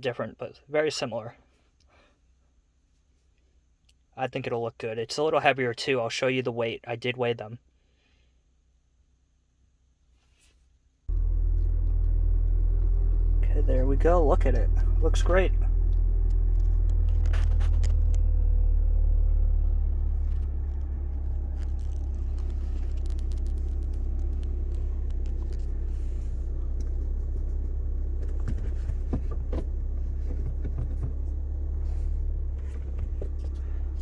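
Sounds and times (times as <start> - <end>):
car engine idling: 11.1 - 34.0.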